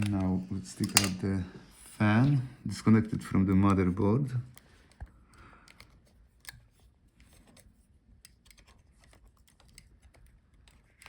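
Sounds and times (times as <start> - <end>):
faint clicks and taps: 3.2 - 11.0.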